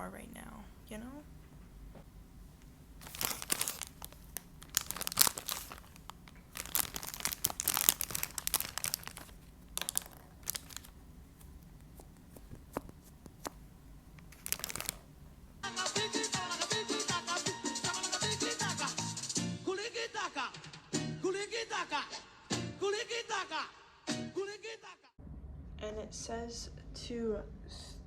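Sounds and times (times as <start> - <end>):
plastic packets crinkling and tearing: 3.0 - 13.6, 14.2 - 15.1
music with steady beat: 15.6 - 19.7.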